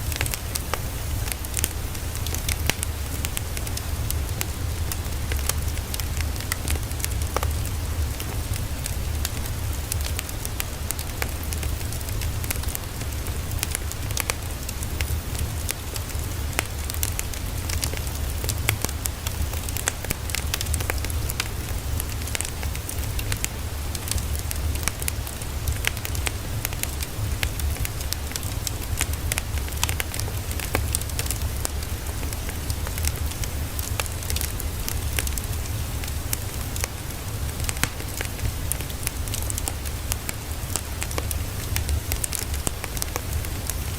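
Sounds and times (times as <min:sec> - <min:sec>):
dense crackling clicks: 0:09.2 - 0:43.9.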